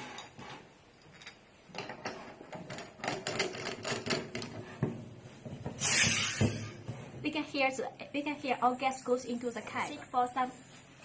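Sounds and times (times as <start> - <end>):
clicking and rattling of screwing: 1.1 - 4.6
gas hissing: 5.8 - 6.7.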